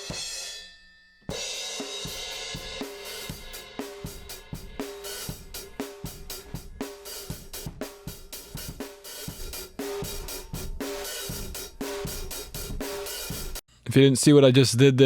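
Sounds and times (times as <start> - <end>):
kick drum hits: 7.4 - 8.8.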